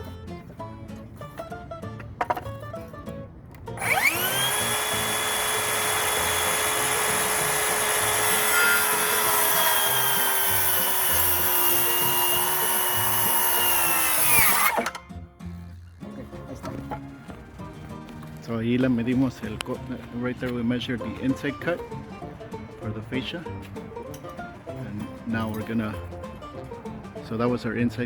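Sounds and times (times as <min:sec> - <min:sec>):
electric saw cutting wood: 0:03.8 - 0:15.0.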